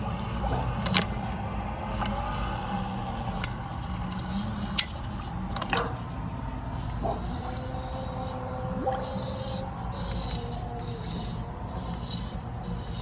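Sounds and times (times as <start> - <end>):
low rumble in sewer line: 0.0 - 13.0.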